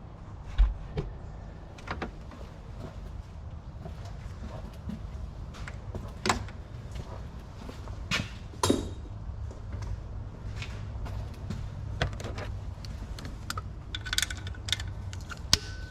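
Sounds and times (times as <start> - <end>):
steady low hum: 0.0 - 15.9
socket wrench clinking on metal: 13.2 - 15.9.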